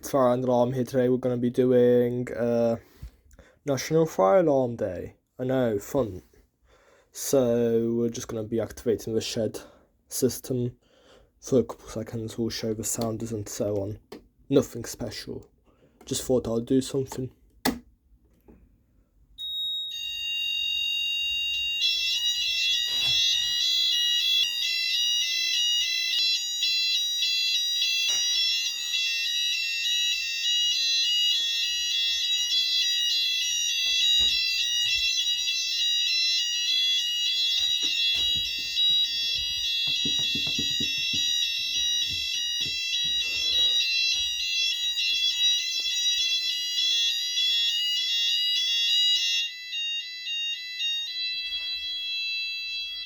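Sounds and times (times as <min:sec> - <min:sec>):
fire alarm sounders: 0:19.4 - 0:53.0.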